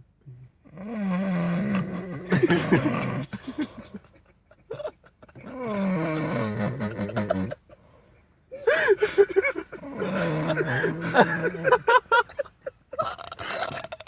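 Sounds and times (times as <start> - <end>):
loud snoring: 0.7 - 3.4, 5.4 - 7.6, 9.8 - 11.9.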